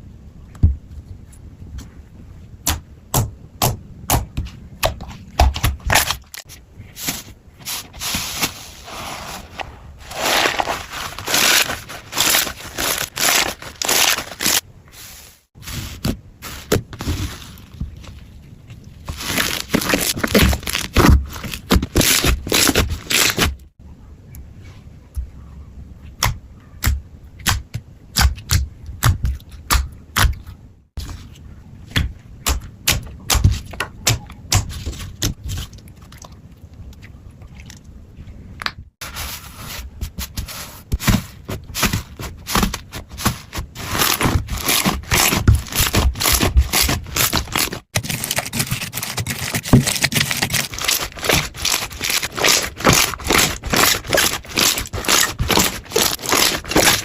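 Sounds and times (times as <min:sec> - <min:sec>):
slime crackling and popping: 0:43.9 - 0:57.0.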